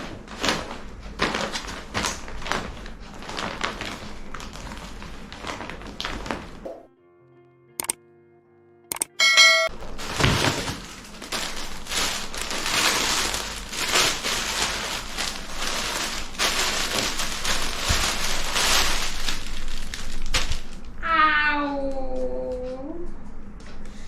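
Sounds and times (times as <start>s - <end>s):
wrapping crinkling and rustling: 0.0s - 6.6s, 9.7s - 21.0s.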